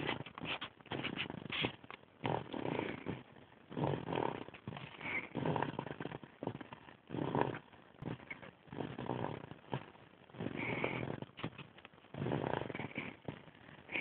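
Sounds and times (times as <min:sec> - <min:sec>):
person snoring: 0:02.3 - 0:09.8, 0:10.4 - 0:11.3, 0:12.1 - 0:14.0.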